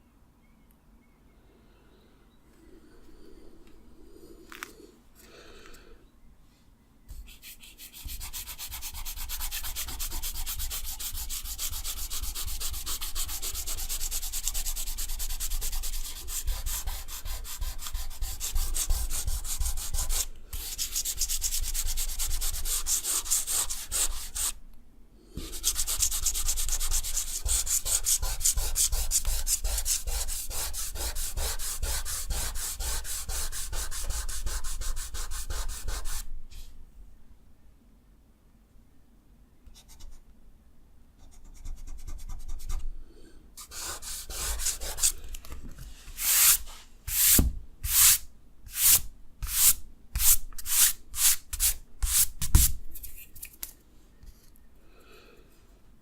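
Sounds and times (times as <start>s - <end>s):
eraser rubbing on paper: 7.1s - 24.6s, 25.4s - 36.3s, 43.6s - 45.2s, 46.1s - 52.7s.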